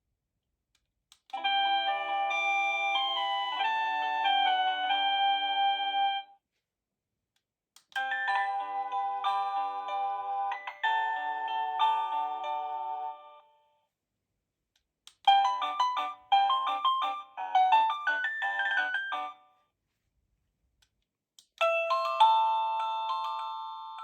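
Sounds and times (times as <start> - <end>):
electronic doorbell chime melody: 1.4 - 6.3, 8.0 - 13.6, 15.3 - 19.4, 21.6 - 24.0.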